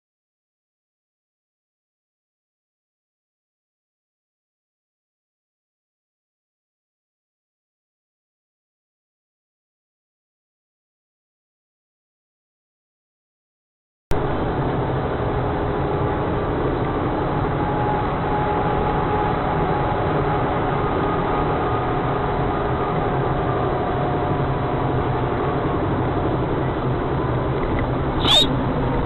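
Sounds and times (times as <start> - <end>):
vehicle engine and road noise: 14.1 - 29.0.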